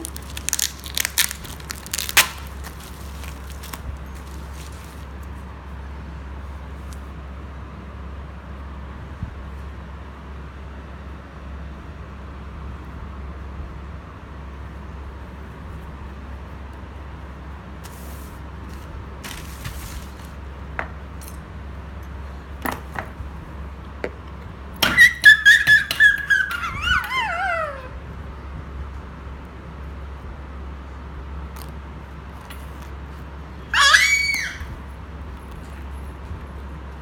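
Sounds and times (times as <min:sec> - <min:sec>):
steady low hum: 0:27.7 - 0:33.8
squeak sliding down in pitch: 0:33.8 - 0:34.7.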